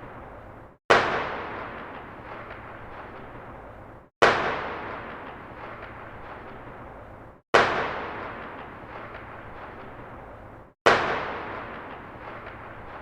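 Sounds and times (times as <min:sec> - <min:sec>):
distant gunshot with echo: 0:00.9 - 0:03.6, 0:04.2 - 0:06.9, 0:07.6 - 0:10.2, 0:10.9 - 0:13.0.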